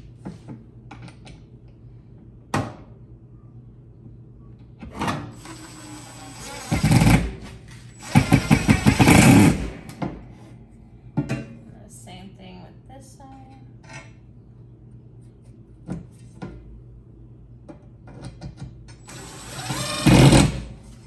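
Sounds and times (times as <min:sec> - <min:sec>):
power drill driving screws: 0:05.4 - 0:09.7, 0:19.0 - 0:20.8.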